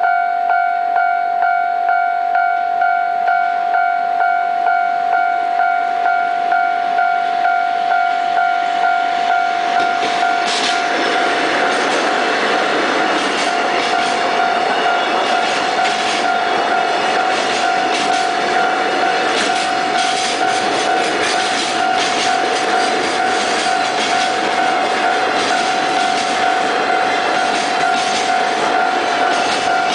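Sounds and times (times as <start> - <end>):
level crossing bell ringing: 0.0 - 10.5, 13.5 - 29.9
freight train rumbling: 5.6 - 29.9.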